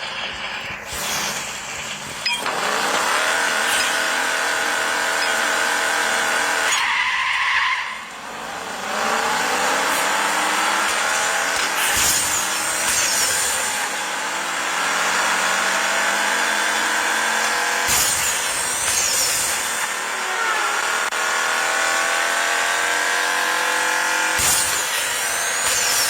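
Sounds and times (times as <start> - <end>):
car engine revving hard: 0.0 - 26.0
tyres squealing: 0.9 - 8.3.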